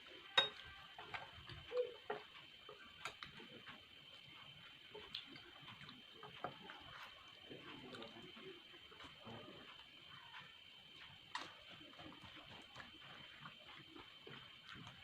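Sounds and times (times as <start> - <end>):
chewing and utensil clicks: 0.3 - 15.0.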